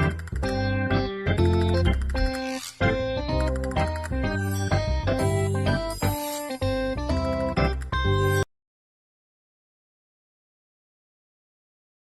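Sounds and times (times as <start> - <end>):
upbeat background music: 0.0 - 8.5.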